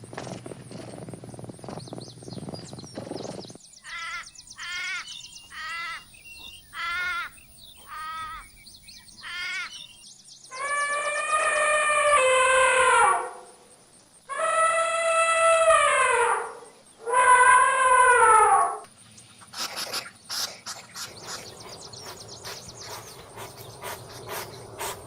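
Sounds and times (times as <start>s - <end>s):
long falling animal calls: 3.8s - 8.5s, 10.5s - 13.5s, 14.3s - 18.9s
animal warbling calls: 14.3s - 25.0s.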